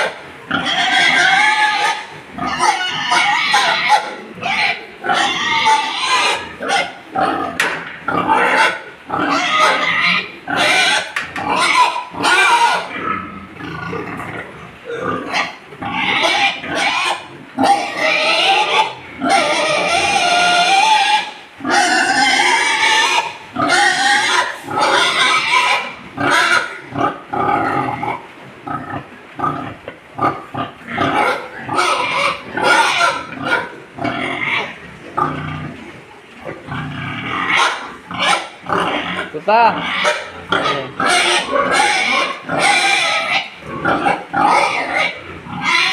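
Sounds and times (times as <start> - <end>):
boar squealing: 0.0 - 7.4, 8.3 - 14.0, 14.8 - 27.6, 36.8 - 45.9
boar grunting: 36.6 - 45.9.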